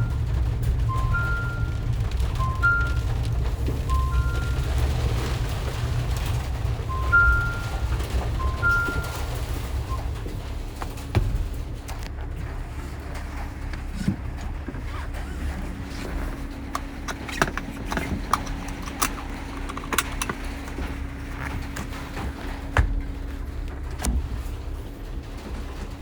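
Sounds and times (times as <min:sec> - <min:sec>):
road and drivetrain rumble: 0:00.0 - 0:26.0
steady hum: 0:08.4 - 0:26.0
sharp clicks and knocks: 0:10.8 - 0:24.8.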